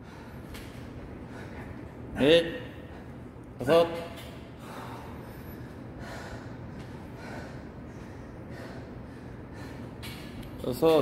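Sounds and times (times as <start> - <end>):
man breathing hard: 0.0 - 0.6, 1.2 - 2.1, 4.5 - 10.3.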